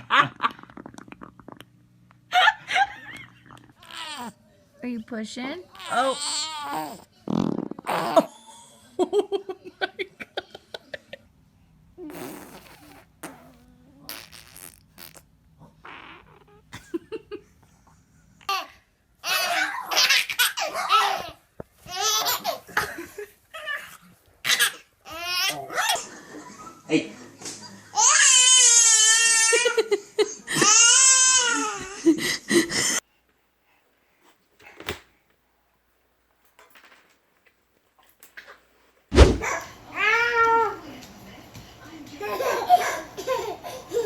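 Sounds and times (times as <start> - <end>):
baby farting: 0.5 - 1.8, 6.1 - 8.4, 12.0 - 16.7, 39.1 - 39.5.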